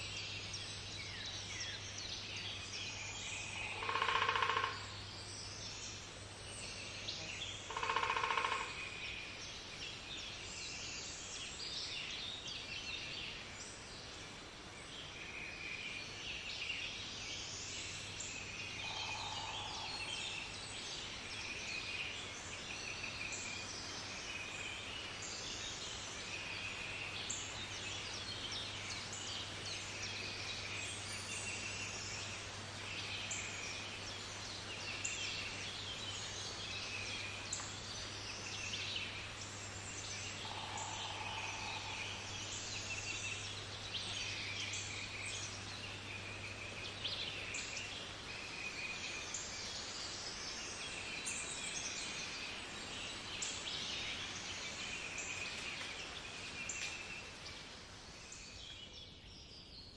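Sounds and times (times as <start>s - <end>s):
birds calling: 24.8s - 58.6s.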